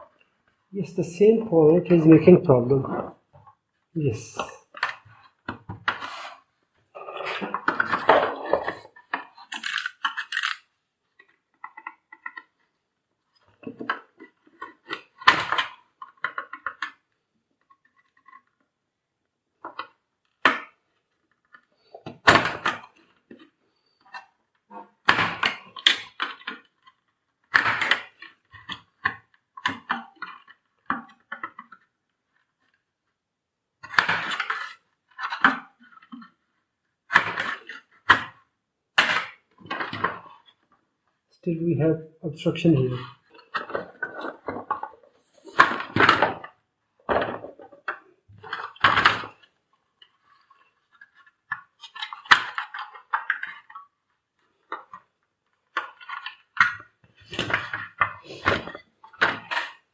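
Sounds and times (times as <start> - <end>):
clattering of hard plastic parts: 7.2 - 12.7, 19.7 - 32.8, 33.8 - 40.8, 43.1 - 59.9.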